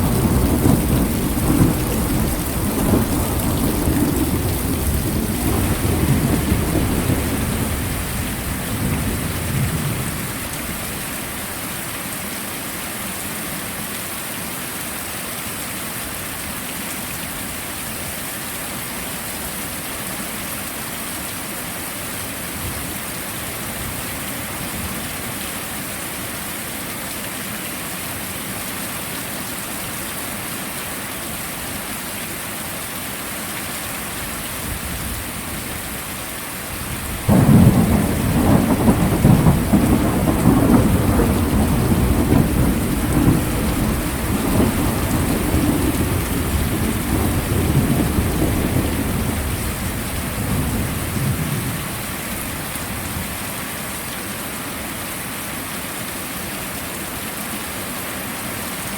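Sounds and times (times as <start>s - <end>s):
thunder clap and rumble: 0.0s - 10.2s, 37.0s - 52.0s
heavy rain: 0.0s - 58.9s.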